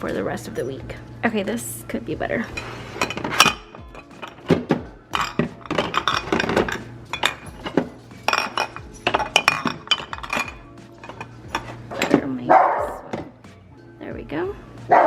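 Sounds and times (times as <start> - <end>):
background music: 0.0 - 15.0
glass jars clinking together: 2.5 - 13.4.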